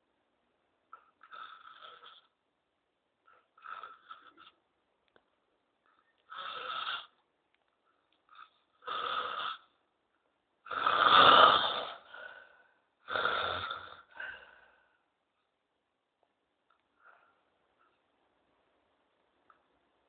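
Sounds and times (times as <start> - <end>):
man snoring: 1.2 - 2.3, 3.6 - 4.5, 6.3 - 7.2, 8.3 - 9.7, 10.7 - 12.4, 13.0 - 14.4
faint breaths: 11.7 - 15.6, 16.7 - 18.2.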